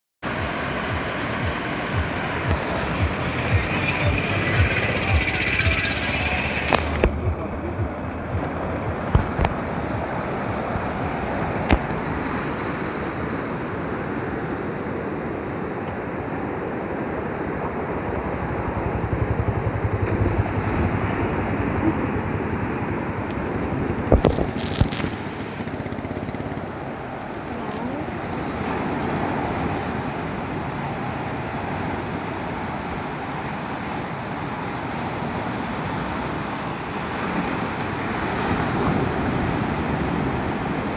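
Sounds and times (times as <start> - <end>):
sea waves washing onto beach: 0.2 - 3.7.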